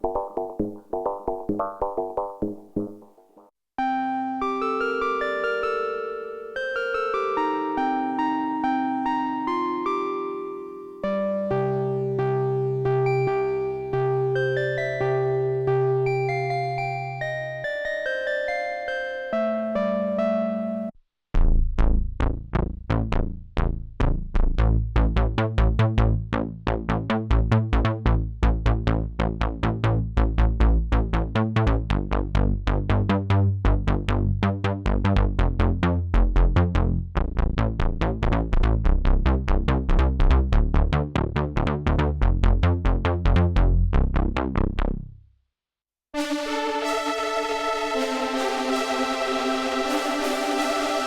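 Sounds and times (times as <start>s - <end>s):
synthesizer sequenced plucked notes: 0.0s - 20.9s, 46.2s - 51.0s
heavy synth bass: 21.4s - 45.1s, 46.2s - 51.0s.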